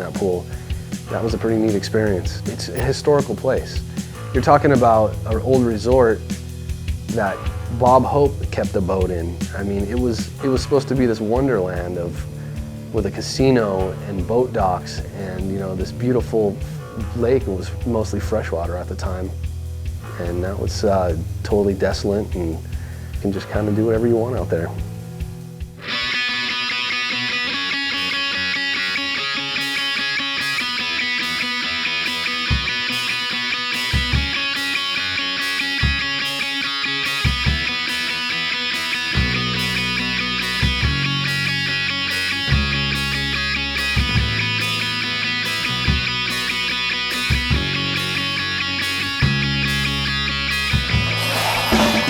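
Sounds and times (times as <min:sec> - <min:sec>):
distorted electric guitar: 0:00.0 - 0:17.6, 0:24.4 - 0:52.0
heavy bass line: 0:00.0 - 0:25.8, 0:39.1 - 0:52.0.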